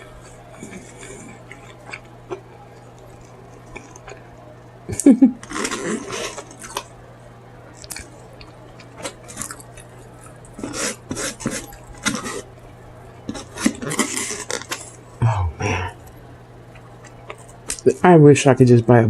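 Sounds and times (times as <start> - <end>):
close chewing and mouth smacking: 0.0 - 7.0, 7.7 - 12.5, 13.2 - 15.0, 16.0 - 17.9
faint low hum: 0.0 - 19.0.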